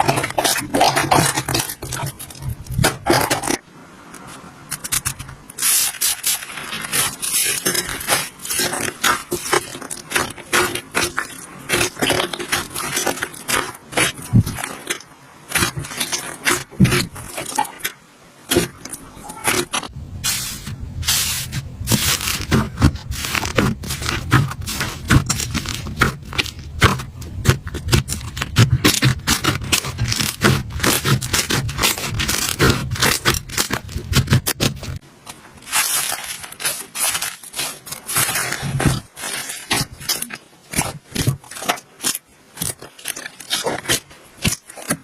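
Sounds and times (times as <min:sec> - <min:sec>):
slime squishing and popping: 0:04.7 - 0:17.9.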